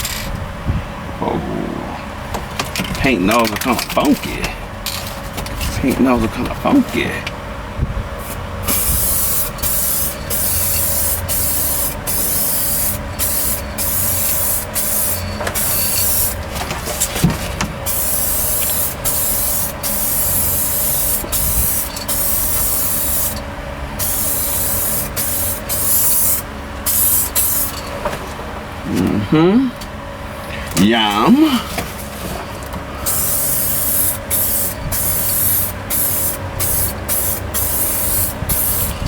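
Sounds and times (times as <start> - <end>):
spray paint can hissing: 8.2 - 16.4, 17.9 - 23.4, 24.0 - 27.8, 33.0 - 39.0.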